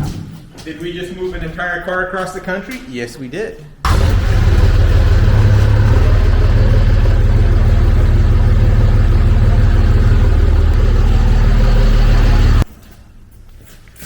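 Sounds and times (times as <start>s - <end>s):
vehicle engine running: 3.9s - 12.6s.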